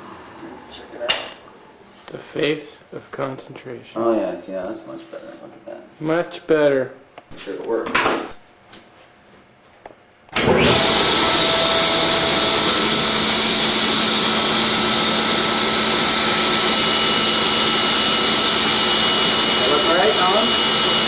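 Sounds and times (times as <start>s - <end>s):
electric machine running: 10.3s - 21.0s.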